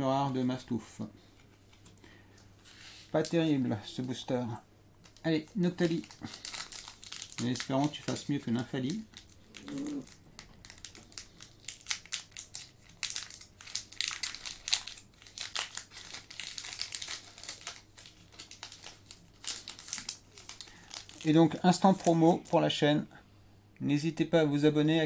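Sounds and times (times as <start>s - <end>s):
foil wrapper crinkling: 5.0s - 22.7s.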